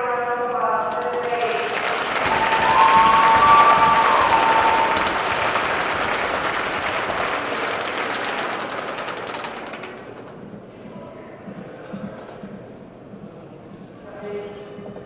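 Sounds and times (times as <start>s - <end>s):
crowd applauding: 0.5s - 10.5s.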